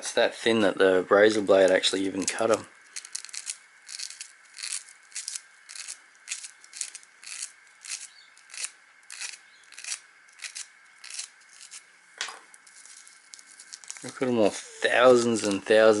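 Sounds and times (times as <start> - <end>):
razor blade scraping copper wire: 1.6 - 11.9.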